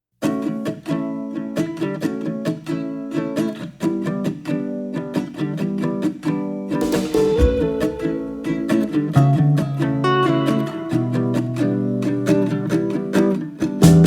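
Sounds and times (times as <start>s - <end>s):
acoustic guitar strumming: 0.2s - 14.0s.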